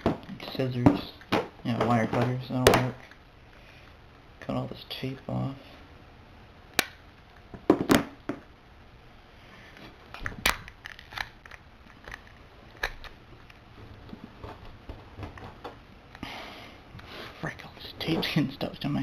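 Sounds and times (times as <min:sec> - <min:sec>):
tape crinkling: 0:10.1 - 0:13.7.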